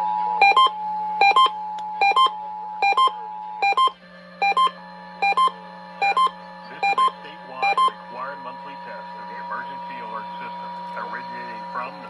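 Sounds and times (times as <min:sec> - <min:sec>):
steady low hum: 0:00.0 - 0:12.0
low-then-high electronic beeps: 0:00.4 - 0:08.0
two-tone attention signal: 0:00.4 - 0:08.0.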